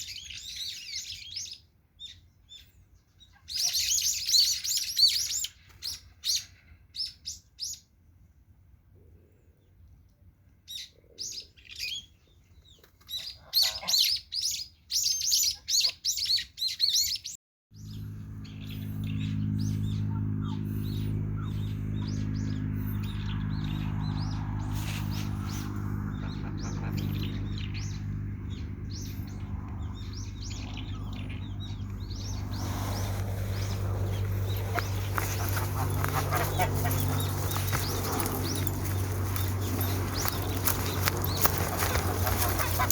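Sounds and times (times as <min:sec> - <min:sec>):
birds chirping: 0:11.2 - 0:42.9
steady low tonal hum: 0:17.8 - 0:42.9.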